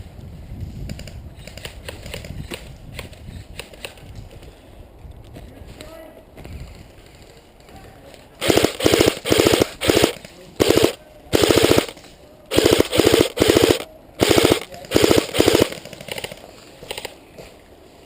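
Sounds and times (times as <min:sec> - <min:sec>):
airsoft gun firing bursts: 0:08.4 - 0:17.1.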